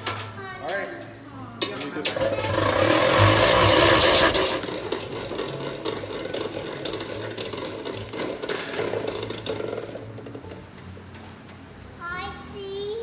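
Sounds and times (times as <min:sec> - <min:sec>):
honey extractor whirring and rattling: 0:00.0 - 0:12.3.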